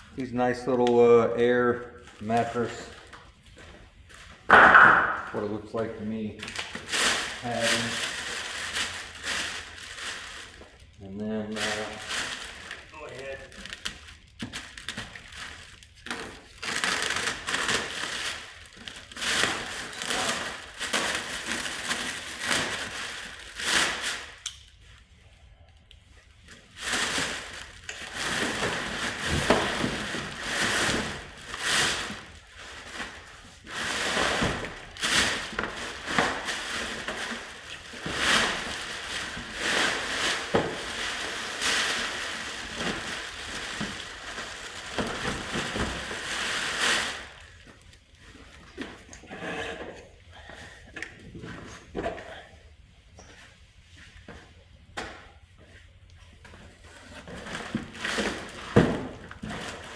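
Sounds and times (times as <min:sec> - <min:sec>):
plastic air cushions crinkling: 0:05.2 - 0:25.1, 0:26.2 - 0:49.2, 0:55.3 - 0:59.9.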